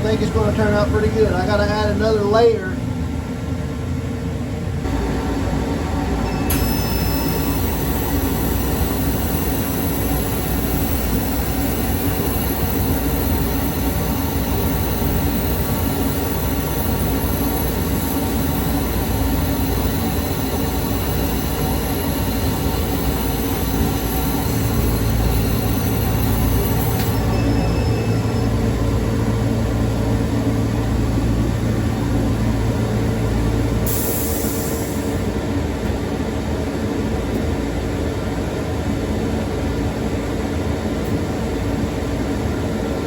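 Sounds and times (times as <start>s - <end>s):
loud mechanical noise: 0.0s - 43.0s
low hum: 4.7s - 33.9s.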